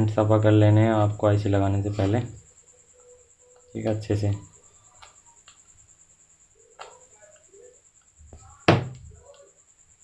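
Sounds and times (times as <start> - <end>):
faint high-pitched whine: 0.0 - 10.0
loud knock on workbench: 8.7 - 9.0.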